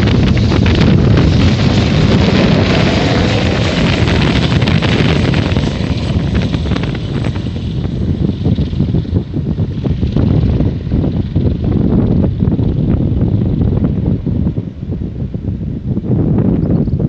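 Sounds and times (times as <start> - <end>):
helicopter flying past: 0.0 - 14.0
wind buffeting microphone: 0.0 - 17.0.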